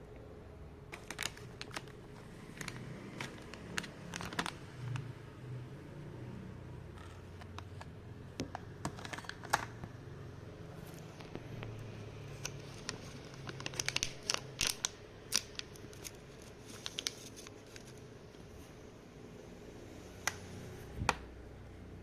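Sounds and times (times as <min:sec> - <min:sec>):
low steady hum: 0:00.0 - 0:22.0
plastic packaging clicks and taps: 0:12.4 - 0:15.7.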